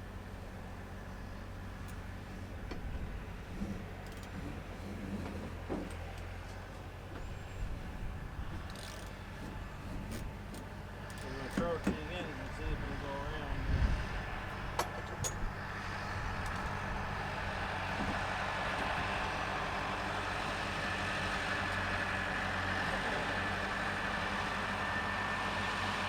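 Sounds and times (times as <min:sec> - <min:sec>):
tractor diesel engine idling: 0:00.0 - 0:26.0.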